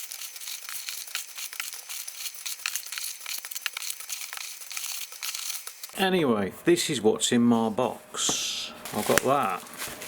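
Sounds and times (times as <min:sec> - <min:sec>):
packing peanuts crackling rustle: 0:00.0 - 0:06.0, 0:08.9 - 0:10.0.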